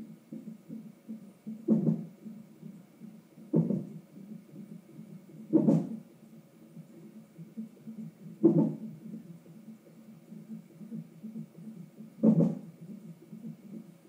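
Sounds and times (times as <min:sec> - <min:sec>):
sharp thumps of fetal hiccups: 0:01.7 - 0:02.1, 0:05.5 - 0:06.0, 0:08.4 - 0:08.8, 0:12.2 - 0:12.7.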